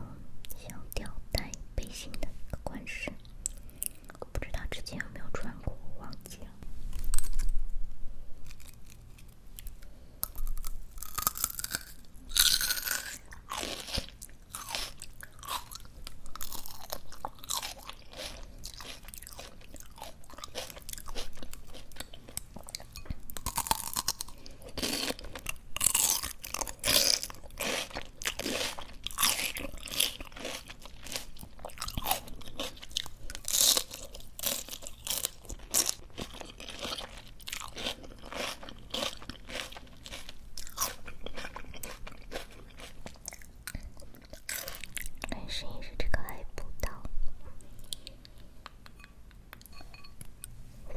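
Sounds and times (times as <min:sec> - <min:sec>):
wet crunchy chewing: 0:08.4 - 0:45.3.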